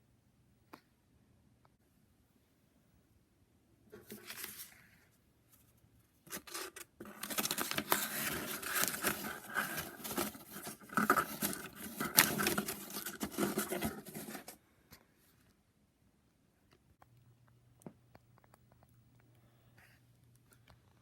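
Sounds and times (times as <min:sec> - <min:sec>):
handling noise clicks and rustles: 0:06.3 - 0:14.6.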